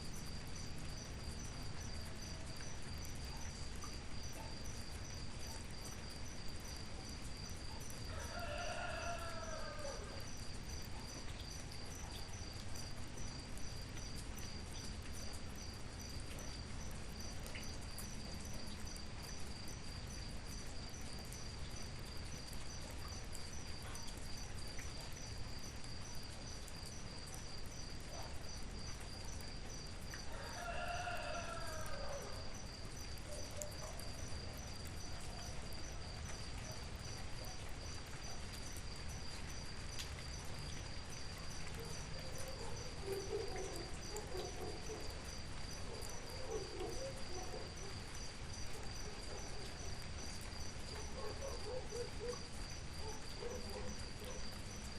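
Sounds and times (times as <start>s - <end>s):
crickets trilling: 0.0s - 54.9s
steady rain: 0.0s - 54.9s
rooster crowing: 8.1s - 10.3s, 30.3s - 32.5s.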